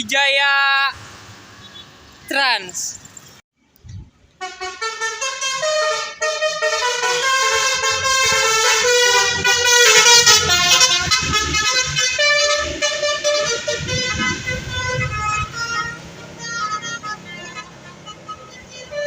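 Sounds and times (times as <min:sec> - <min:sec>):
multi-tone bus horns playing a melody: 0:04.4 - 0:19.0.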